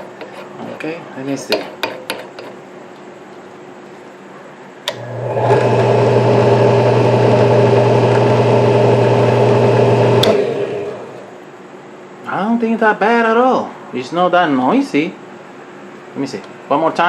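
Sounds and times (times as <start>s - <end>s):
drill press motor hum: 4.8s - 11.4s
drill press switch click: 4.9s - 5.1s, 10.2s - 10.4s.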